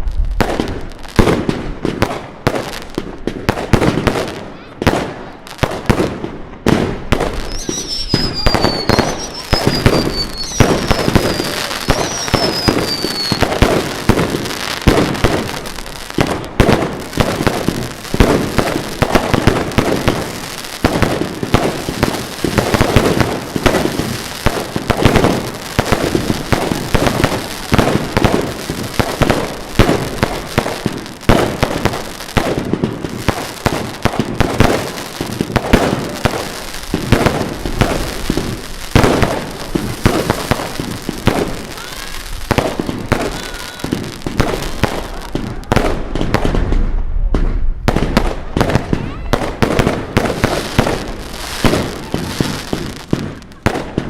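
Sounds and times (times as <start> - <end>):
fireworks bangs and crackles: 0.0 - 54.0
falling firework whistles: 7.4 - 13.8.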